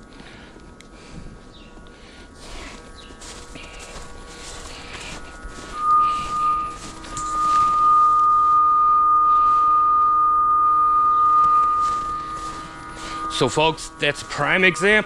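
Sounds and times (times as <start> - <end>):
scuffing noises: 2.4 - 8.1
receiver high tone: 2.5 - 15.0.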